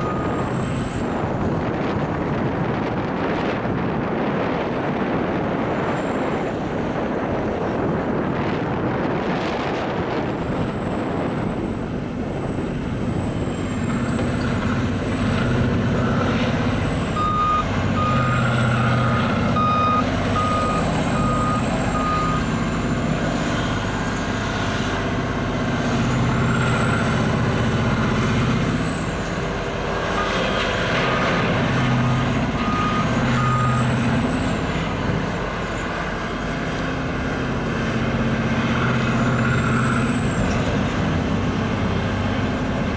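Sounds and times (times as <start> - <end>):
diesel engine under load: 0.0 - 42.9
back-up alarm beeping: 17.2 - 18.4, 19.6 - 22.5.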